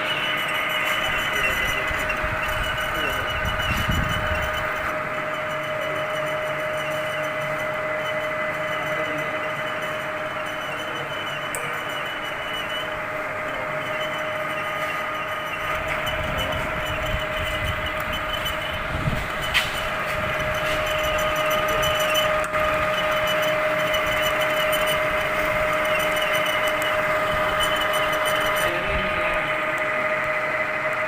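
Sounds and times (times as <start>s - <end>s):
metal lathe motor whine: 0.0s - 31.0s
sharp click: 11.5s - 11.7s.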